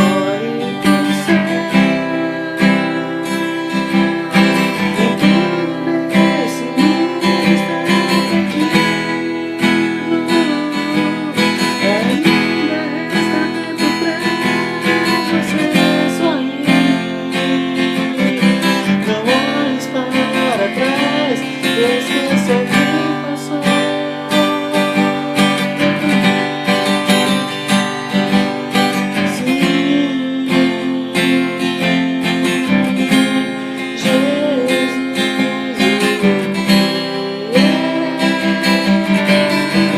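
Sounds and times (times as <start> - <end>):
strummed acoustic guitar: 0.0 - 39.9
melody line: 0.1 - 21.9.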